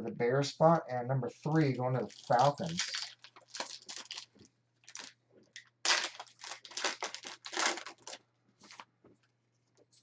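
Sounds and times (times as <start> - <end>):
foil wrapper tearing and rustling: 2.0 - 5.2, 5.8 - 8.8.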